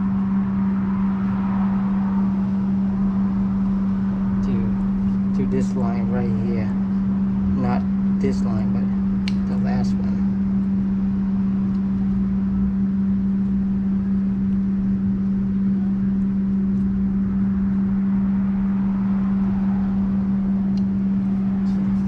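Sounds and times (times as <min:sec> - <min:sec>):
steady mechanical hum: 0:00.0 - 0:22.0.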